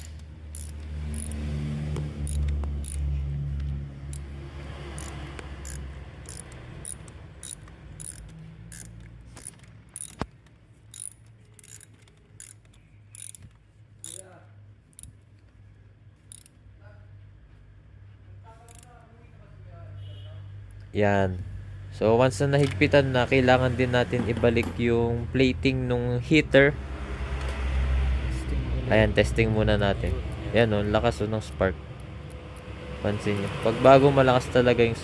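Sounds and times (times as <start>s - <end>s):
ratchet wrench clicking: 0.0s - 4.3s, 4.9s - 15.2s, 16.2s - 16.6s, 18.6s - 19.0s.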